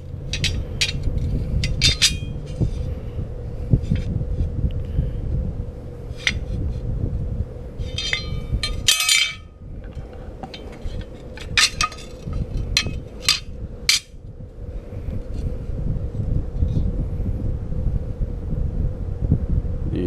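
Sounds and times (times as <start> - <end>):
metal parts clinking: 0.0 - 2.9, 6.1 - 6.5, 7.8 - 14.1.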